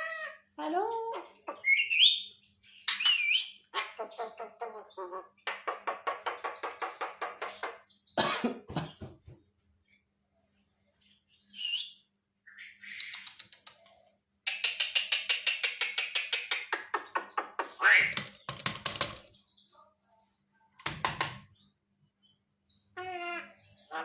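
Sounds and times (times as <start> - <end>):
bird chattering clicks: 2.9 - 4.2, 5.5 - 7.8, 12.9 - 19.3.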